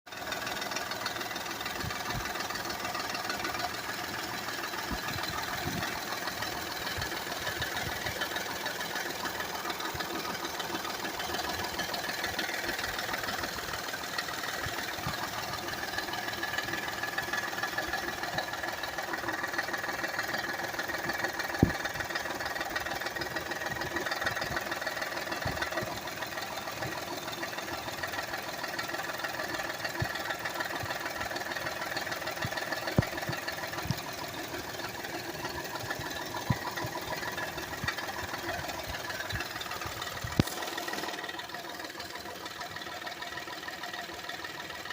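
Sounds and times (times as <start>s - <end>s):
car engine running: 0.1s - 44.9s.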